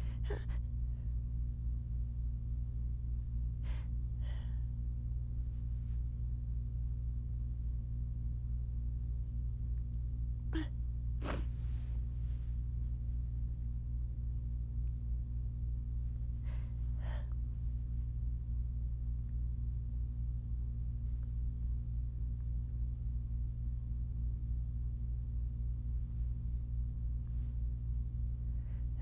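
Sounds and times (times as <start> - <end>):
person breathing: 0.0 - 1.2, 3.6 - 4.8, 11.2 - 12.6, 16.3 - 17.6, 28.4 - 29.0
steady low hum: 0.0 - 29.0
person sneezing: 10.6 - 11.7.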